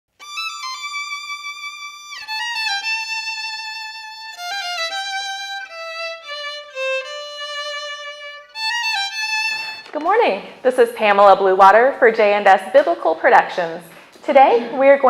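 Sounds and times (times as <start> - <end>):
solo violin melody: 0.2 - 10.0.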